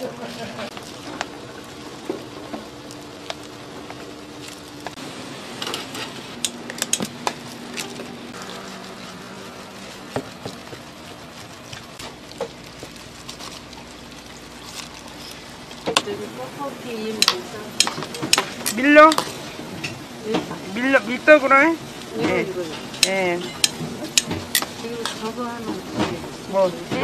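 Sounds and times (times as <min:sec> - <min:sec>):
utensils and dishes clattering: 0:17.0 - 0:21.0, 0:22.2 - 0:27.0.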